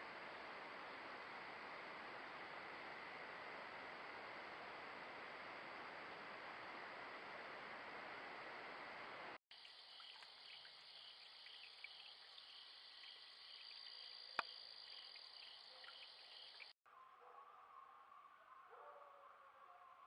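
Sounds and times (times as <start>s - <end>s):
crickets and night insects chirping: 0.0s - 16.8s.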